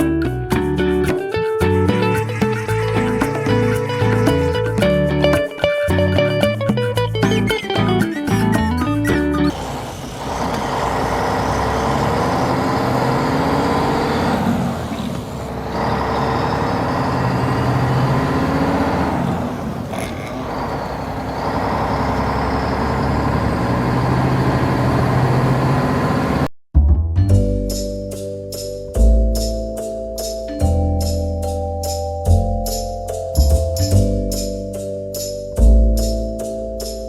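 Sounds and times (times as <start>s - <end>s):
heavy truck engine running: 9.4s - 26.5s.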